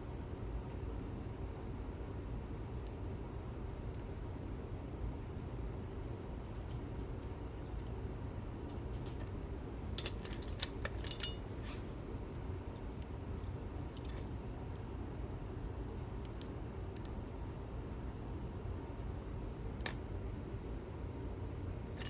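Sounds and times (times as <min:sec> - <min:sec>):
steady low hum: 0:00.0 - 0:22.0
lock picks clinking: 0:10.0 - 0:11.8.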